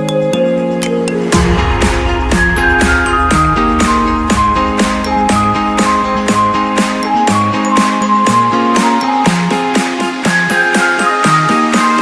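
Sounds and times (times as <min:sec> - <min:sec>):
bright bell-like melody: 0:00.0 - 0:09.6
background music with steady beat: 0:00.0 - 0:12.0.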